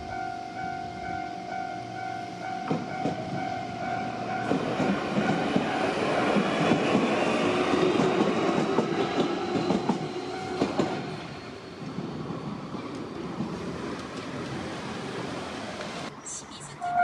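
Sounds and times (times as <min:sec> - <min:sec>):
train wheels clacking on rails: 0:02.4 - 0:16.0.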